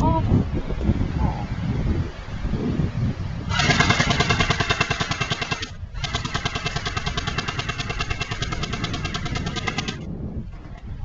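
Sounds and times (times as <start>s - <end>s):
airsoft gun firing full auto: 3.5s - 10.0s.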